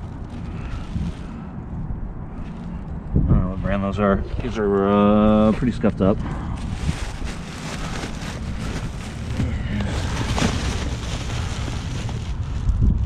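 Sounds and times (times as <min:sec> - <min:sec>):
wind buffeting microphone: 0:00.0 - 0:13.0
boots and clothes rustling: 0:06.5 - 0:12.7.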